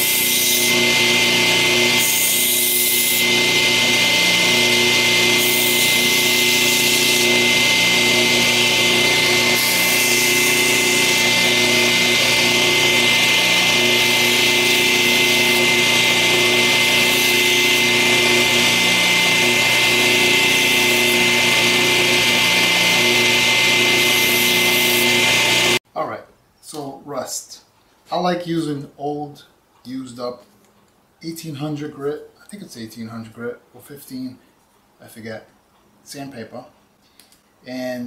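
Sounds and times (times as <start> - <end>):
electric grinder grinding steel: 0.0 - 25.8.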